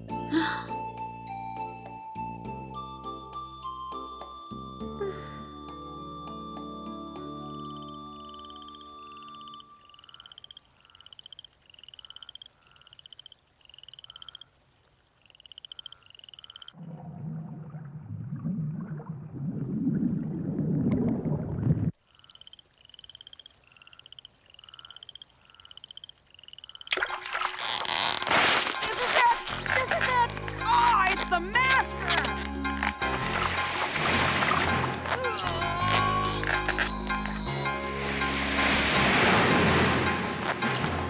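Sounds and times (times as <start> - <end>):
frogs croaking: 7.5 - 16.8, 21.9 - 39.0
rumbling rush of noise: 37.6 - 41.0.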